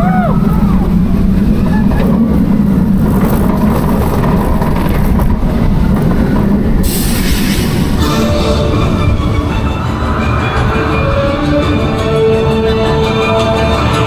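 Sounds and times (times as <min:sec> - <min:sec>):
roller coaster wheels rumbling on rail: 0:00.0 - 0:14.0
sharp hiss: 0:06.8 - 0:08.0
music: 0:07.4 - 0:14.0.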